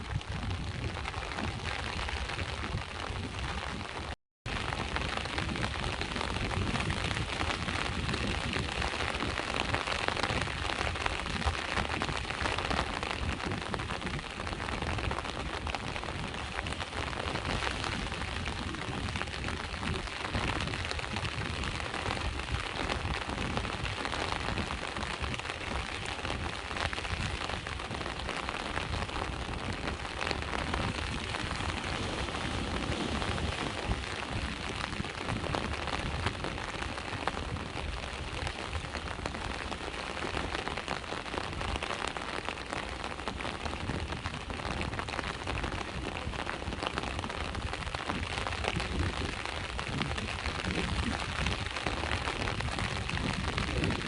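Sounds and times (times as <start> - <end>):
steady rain falling: 0.0 - 54.0
sea waves washing: 23.8 - 41.8.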